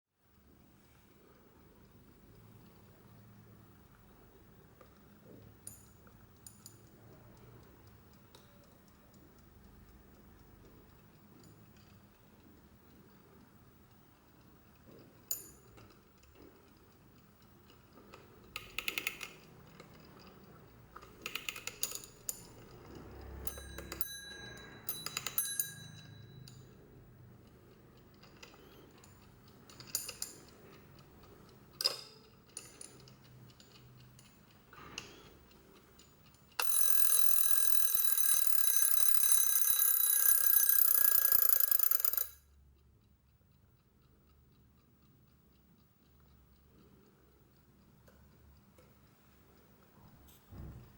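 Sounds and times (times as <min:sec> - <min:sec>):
alarm clock ratcheting clicks: 0:01.6 - 0:49.9
alarm bell ringing: 0:23.4 - 0:26.6, 0:36.6 - 0:42.4.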